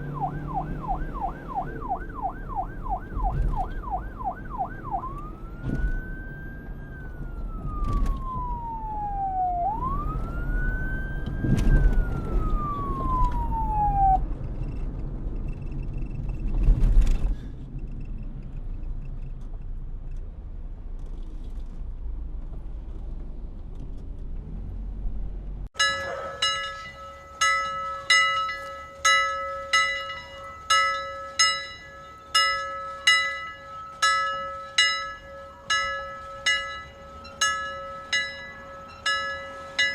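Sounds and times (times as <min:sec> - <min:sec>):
siren wailing: 0:00.0 - 0:14.3, 0:25.8 - 0:39.9
street traffic rumble: 0:00.0 - 0:39.9
bell ringing: 0:25.8 - 0:39.9.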